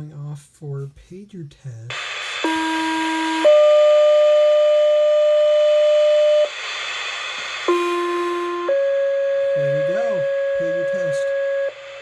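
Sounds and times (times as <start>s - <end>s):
radio hiss: 1.8s - 12.0s
two-tone pager alert: 7.7s - 11.8s.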